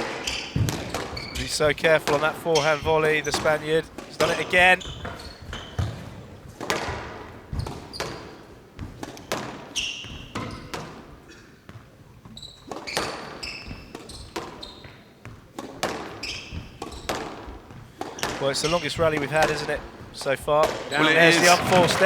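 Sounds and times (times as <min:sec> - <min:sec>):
shoes squeaking on floor: 0:00.0 - 0:01.6, 0:02.4 - 0:06.3, 0:07.6 - 0:09.0, 0:09.6 - 0:15.4, 0:16.2 - 0:18.9, 0:20.9 - 0:22.0.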